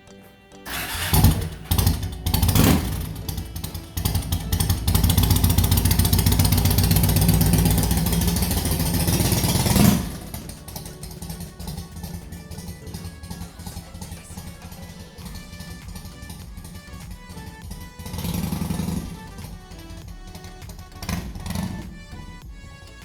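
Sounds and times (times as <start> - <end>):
motorcycle engine revving: 0.7 - 23.0.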